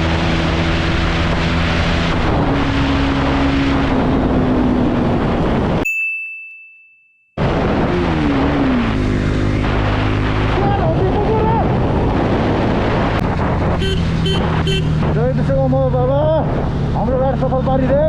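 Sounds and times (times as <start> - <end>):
high ringing tone: 5.8 - 7.4
wind noise on microphone: 7.4 - 15.2.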